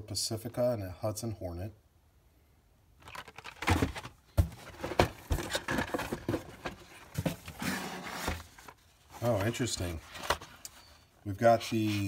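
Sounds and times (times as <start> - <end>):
plastic packaging rustling: 3.0 - 11.0.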